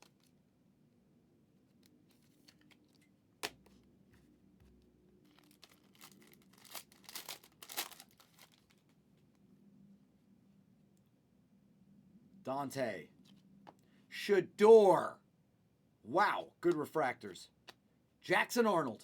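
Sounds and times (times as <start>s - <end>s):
packaging snapping: 5.3s - 8.8s
packaging tearing and crinkling: 5.3s - 8.9s.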